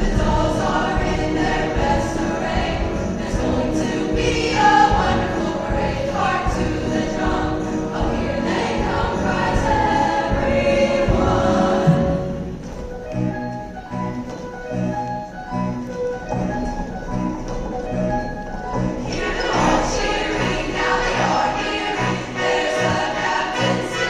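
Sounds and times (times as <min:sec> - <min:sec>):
choir singing: 0:00.0 - 0:12.7, 0:19.0 - 0:24.0
instrumental accompaniment: 0:00.0 - 0:24.0.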